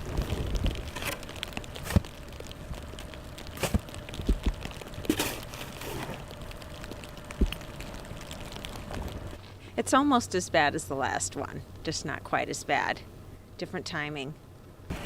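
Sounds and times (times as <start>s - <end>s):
snow shovel scraping snow: 1.8s - 2.1s, 3.6s - 3.8s, 5.1s - 6.2s
shovel blade striking ground: 3.6s - 3.8s, 5.1s - 6.1s.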